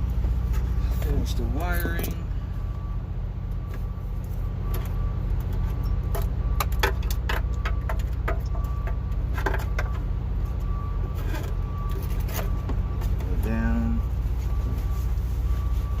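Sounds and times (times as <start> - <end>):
steady low hum: 0.0 - 16.0
clicks and rattles of plastic parts: 5.5 - 10.0.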